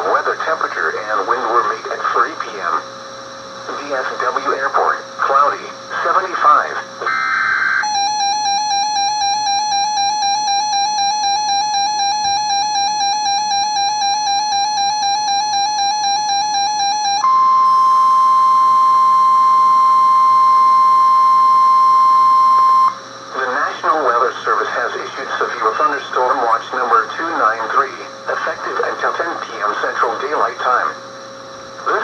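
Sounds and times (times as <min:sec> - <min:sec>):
pulsing electronic alarm tone: 0:07.1 - 0:23.0
steady single alarm tone: 0:07.1 - 0:23.0.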